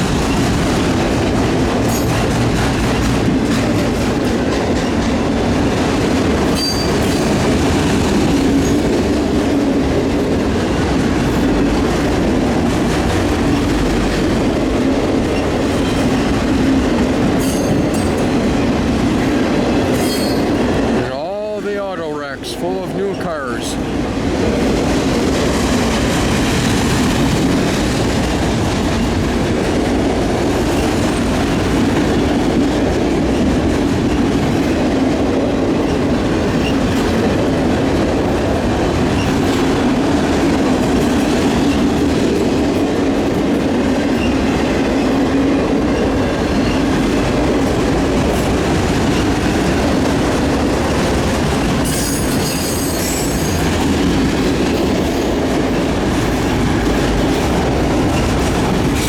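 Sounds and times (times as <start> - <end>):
freight train wheels rumbling: 0.0 - 59.0
wheel squeal: 6.6 - 7.1, 51.9 - 53.6.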